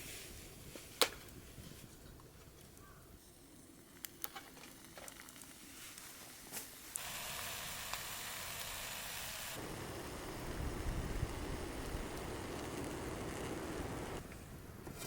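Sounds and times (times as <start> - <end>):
low rushing noise: 9.5 - 14.3.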